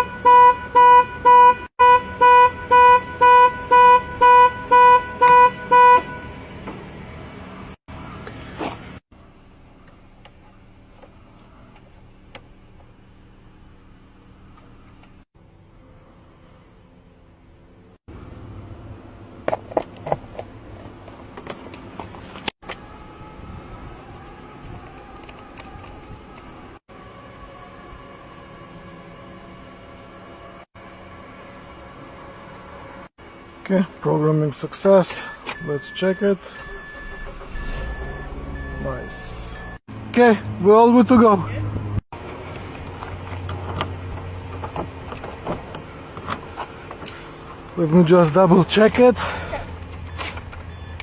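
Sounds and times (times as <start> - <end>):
car alarm beeping: 0.0 - 6.4, 35.0 - 39.9, 50.0 - 51.0.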